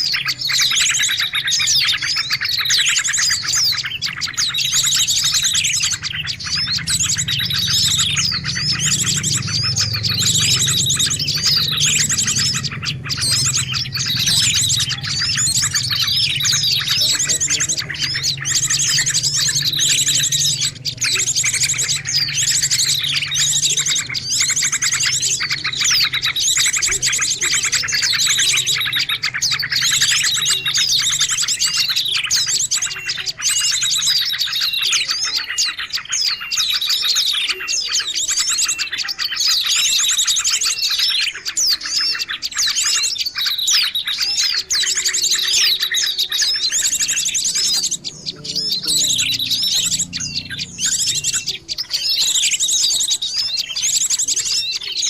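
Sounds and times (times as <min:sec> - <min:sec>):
songbird trilling and whistling: 0:00.0 - 0:55.0.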